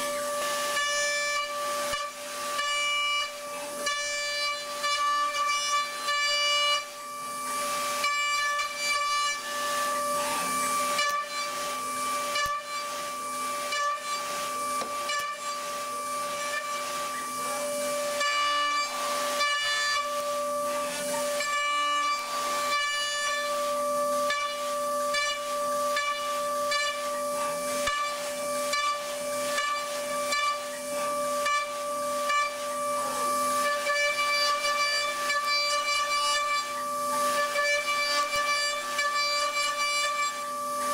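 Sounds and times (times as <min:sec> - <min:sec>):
metal-cutting machine whine: 0:00.0 - 0:40.9.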